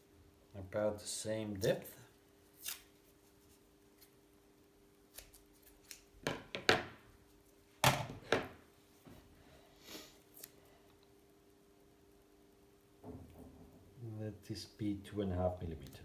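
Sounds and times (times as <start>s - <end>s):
adhesive tape snipping and crinkling: 2.6s - 3.0s, 5.1s - 6.1s.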